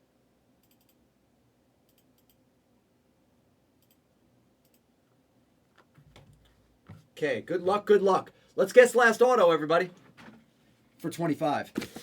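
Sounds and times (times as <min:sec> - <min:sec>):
small sharp clicks: 0:00.6 - 0:01.0, 0:01.9 - 0:02.4, 0:03.8 - 0:04.0.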